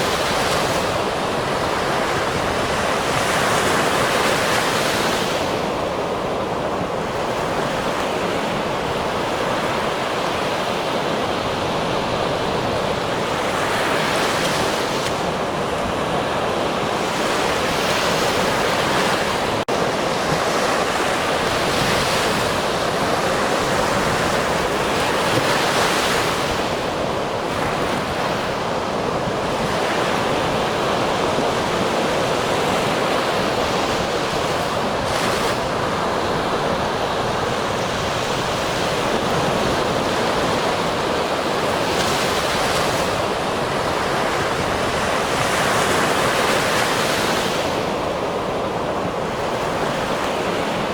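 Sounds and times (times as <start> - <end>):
waves breaking on shore: 0.0 - 50.9.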